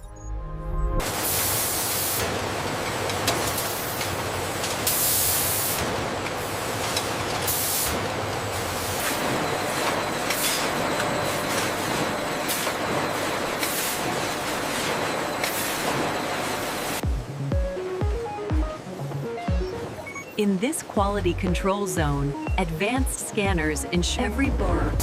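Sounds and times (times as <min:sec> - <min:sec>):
air hissing bursts: 0:01.0 - 0:02.3, 0:04.8 - 0:06.8, 0:07.4 - 0:10.6
machinery noise: 0:01.0 - 0:17.0.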